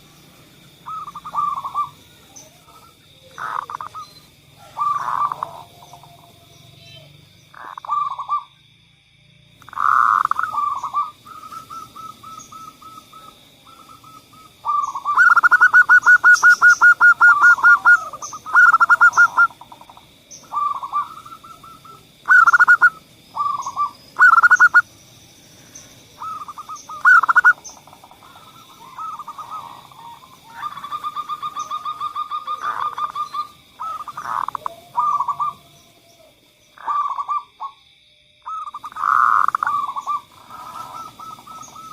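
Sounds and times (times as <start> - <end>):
doves cooing and trilling: 0.0 - 8.6, 9.6 - 37.8, 38.4 - 41.9.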